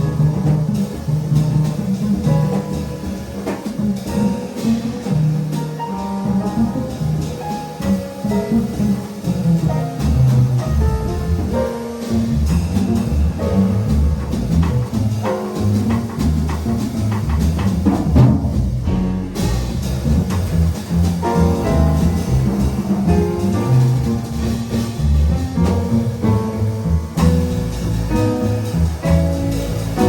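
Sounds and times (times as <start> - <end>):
double bass: 0.0 - 30.0
drum kit: 0.0 - 30.0
piano: 0.0 - 30.0.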